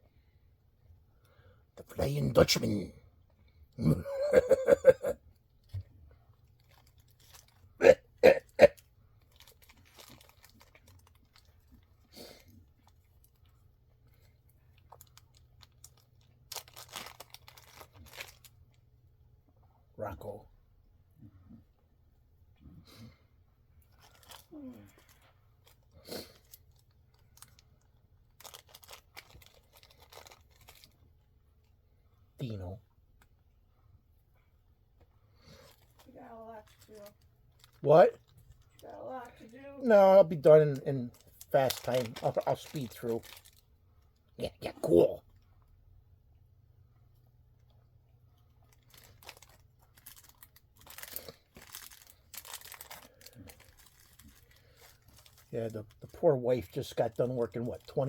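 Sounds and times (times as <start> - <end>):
plastic packaging crinkling: 6.5 - 7.7, 8.7 - 11.9, 14.8 - 18.7, 23.9 - 31.0, 35.6 - 39.3, 40.3 - 43.6, 48.6 - 58.0.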